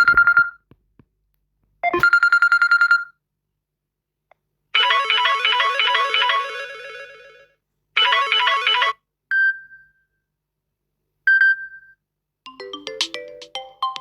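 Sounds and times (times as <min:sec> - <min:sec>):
melodic phone ringtone: 0:04.8 - 0:09.0, 0:12.5 - 0:14.0.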